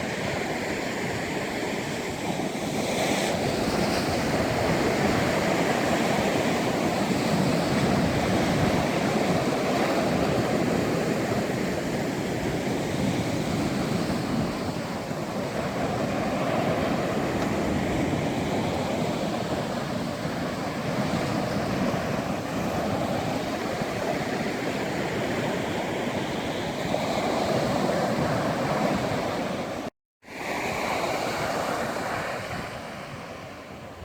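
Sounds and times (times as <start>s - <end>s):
sea waves breaking on beach: 0.0s - 34.0s.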